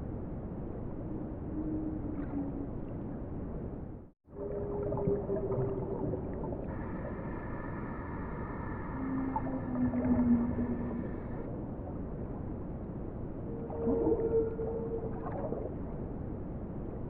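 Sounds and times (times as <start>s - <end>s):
whale moaning calls: 4.4s - 11.5s, 13.4s - 15.7s
ocean noise hiss: 6.7s - 9.8s.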